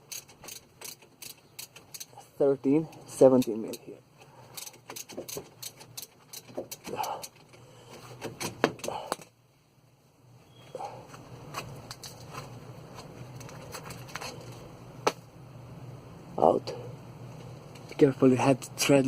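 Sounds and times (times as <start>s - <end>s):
spanner metallic clicks: 0.0s - 2.1s, 2.9s - 3.9s, 4.5s - 7.4s
low steady hum: 0.0s - 19.0s.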